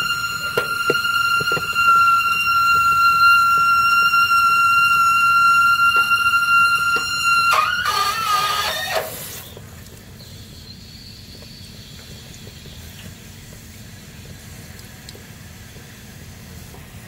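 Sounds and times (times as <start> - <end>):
high wavering whistle: 0.0 - 9.6
hiss of running water: 0.0 - 17.0.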